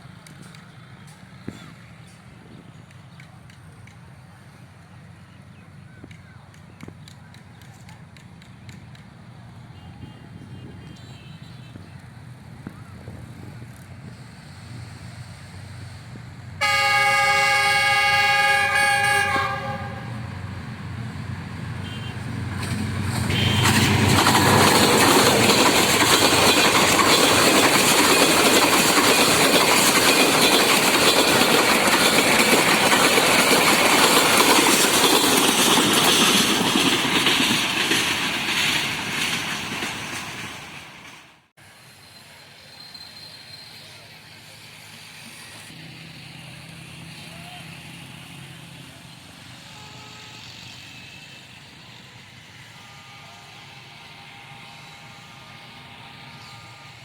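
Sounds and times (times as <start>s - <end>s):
train passing with rail clatter: 0.0s - 57.0s
train horn blast: 16.6s - 20.4s, 21.8s - 22.3s, 23.2s - 24.7s, 49.5s - 50.9s, 52.6s - 57.0s.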